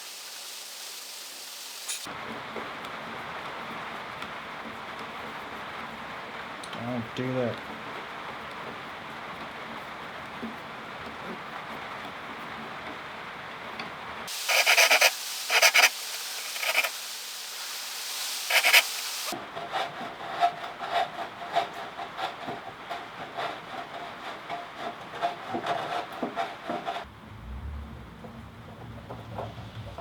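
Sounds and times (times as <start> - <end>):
hand tool strokes on wood: 14.3 - 27.1.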